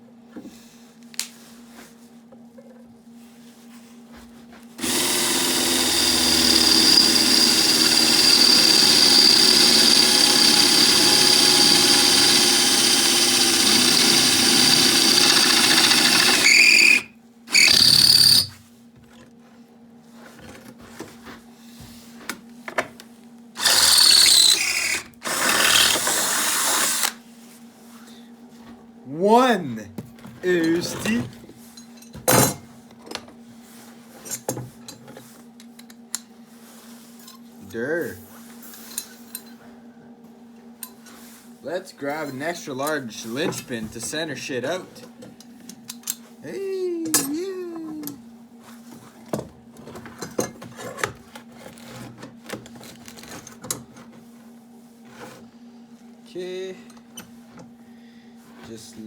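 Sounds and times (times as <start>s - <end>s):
power tool whining on metal: 4.8s - 18.5s, 23.6s - 27.2s.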